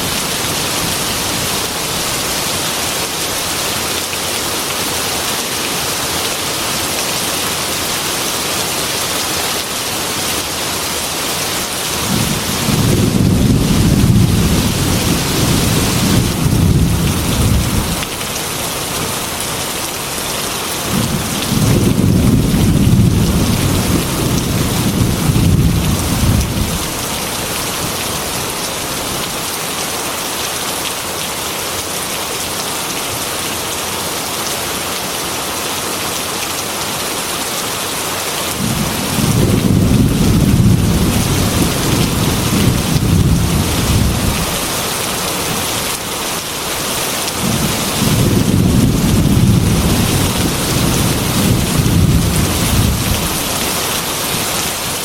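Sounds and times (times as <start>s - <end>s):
heavy rain on a window: 0.0s - 55.0s
thunder rumbles: 12.0s - 18.0s, 20.9s - 27.3s, 38.6s - 44.7s, 47.4s - 53.5s.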